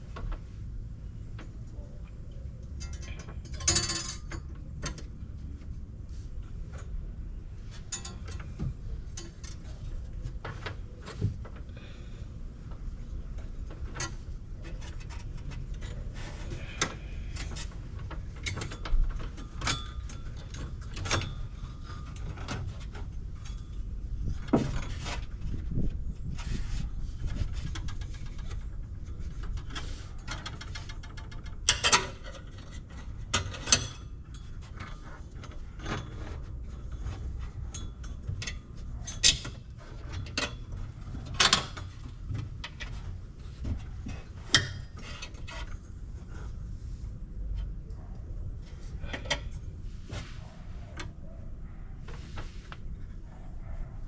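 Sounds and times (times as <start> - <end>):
tools clinking on metal: 2.7 - 5.0.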